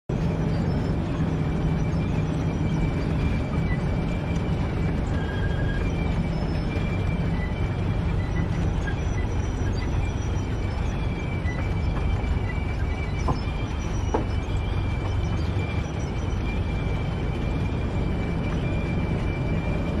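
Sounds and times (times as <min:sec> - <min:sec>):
heavy machinery rumbling: 0:00.1 - 0:20.0.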